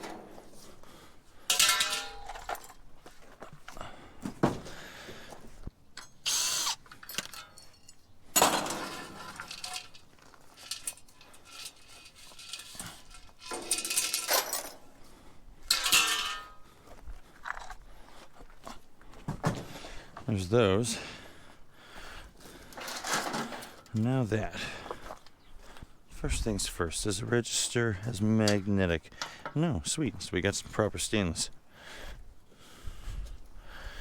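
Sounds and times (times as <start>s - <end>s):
metal clanks: 0.0s - 0.6s, 1.5s - 2.9s, 6.0s - 14.9s, 15.7s - 16.6s
hand tools scraping: 1.5s - 3.9s, 6.0s - 14.9s
short screeches: 6.0s - 6.9s.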